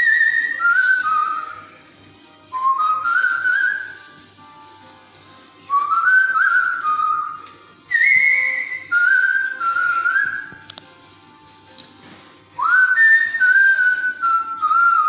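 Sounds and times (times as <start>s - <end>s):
person whistling a melody: 0.0s - 1.8s, 2.5s - 4.2s, 5.6s - 10.7s, 12.6s - 15.0s.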